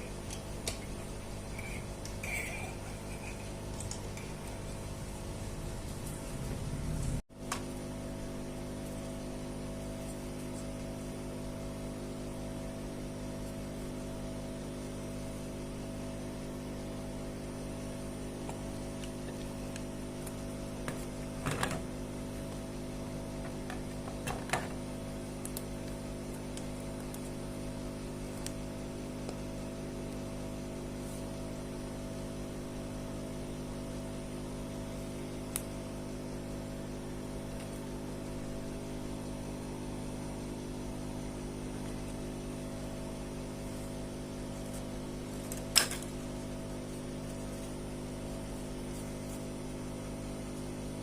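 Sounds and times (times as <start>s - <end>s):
steady electrical hum: 0.0s - 51.0s.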